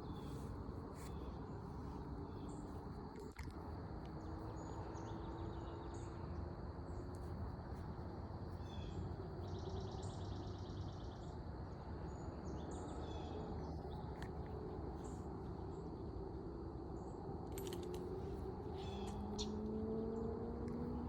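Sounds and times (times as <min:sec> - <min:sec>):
low ambient rumble: 0:00.0 - 0:19.6
birds chirping: 0:17.0 - 0:21.0.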